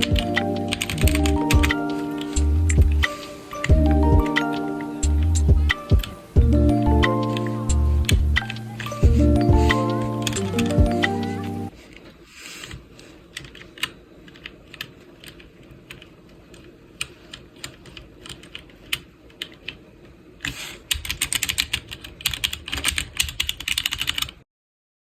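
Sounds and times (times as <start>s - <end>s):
mechanical keyboard typing: 0.0s - 11.4s, 13.2s - 19.8s, 20.4s - 24.4s.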